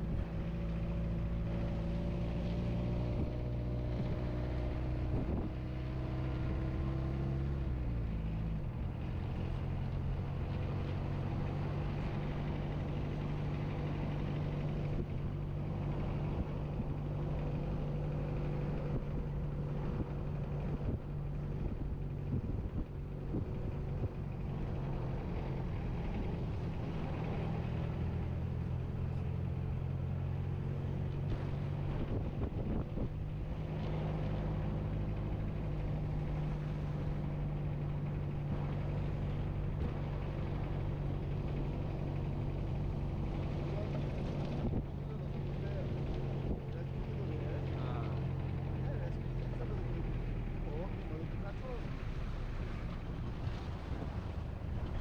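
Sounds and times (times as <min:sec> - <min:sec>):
vehicle engine running: 0:00.0 - 0:55.0.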